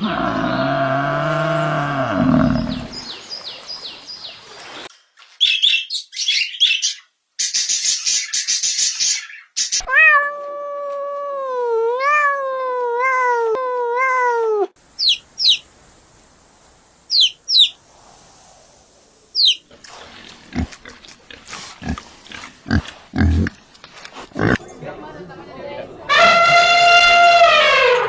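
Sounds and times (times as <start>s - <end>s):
cat meowing: 9.8s - 14.7s
high bird chirps: 15.0s - 15.7s, 17.1s - 17.8s, 19.4s - 19.6s.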